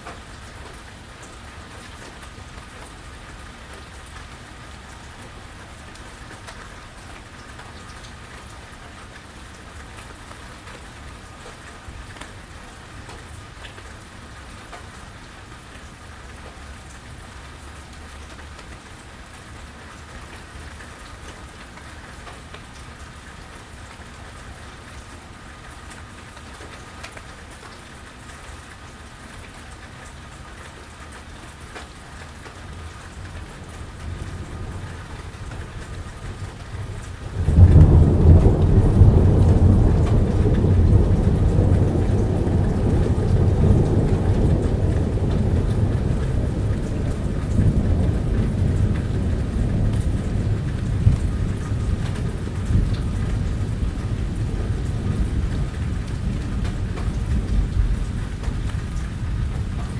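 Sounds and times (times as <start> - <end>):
steady rain: 0.0 - 59.9
thunder rumbling: 32.6 - 59.9.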